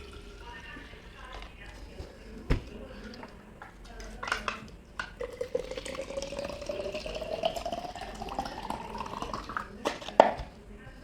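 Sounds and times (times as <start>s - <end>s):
water running into a container: 0.0s - 3.4s, 5.0s - 10.3s.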